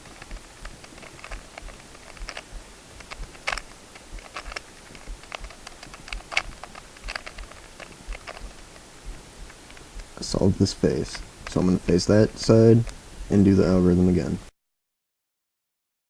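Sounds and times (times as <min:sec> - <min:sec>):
puzzle cube plastic clicks: 0:00.0 - 0:08.8.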